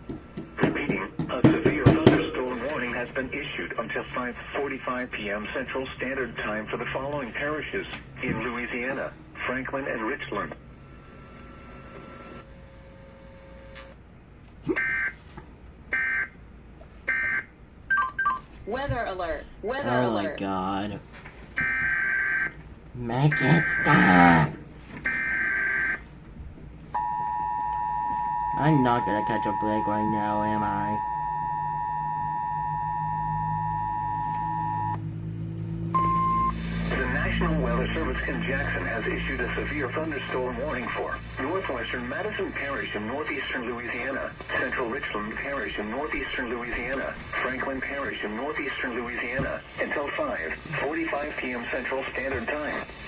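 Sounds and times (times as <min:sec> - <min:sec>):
low hum: 0:00.0 - 0:17.9, 0:22.5 - 0:49.2
high digital data tones: 0:28.2 - 0:35.0, 0:35.9 - 0:41.5
brief single tone: 0:30.6 - 0:35.1, 0:35.9 - 0:37.2.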